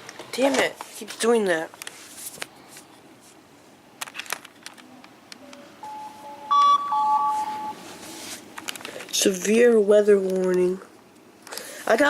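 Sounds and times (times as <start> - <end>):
two-pitch electronic alert tone: 5.8 - 7.8.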